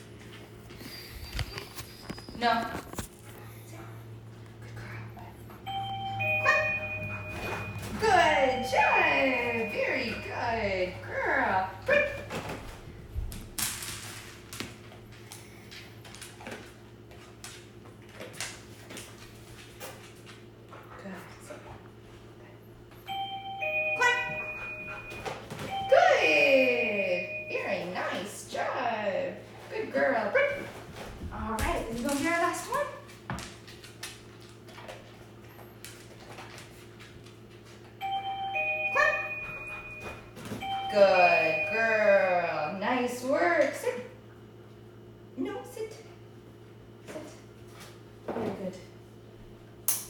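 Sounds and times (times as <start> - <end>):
steady low hum: 0.0 - 34.5
doorbell chime: 5.7 - 11.1, 23.0 - 28.2, 38.0 - 42.5.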